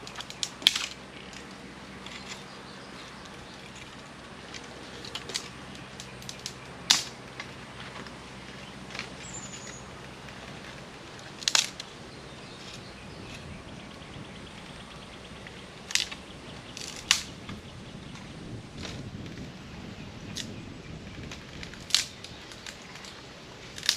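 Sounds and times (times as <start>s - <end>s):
wood snapping: 0.0s - 2.5s, 3.2s - 12.0s, 15.4s - 19.4s, 21.2s - 23.9s
high bird chirp: 8.4s - 10.0s.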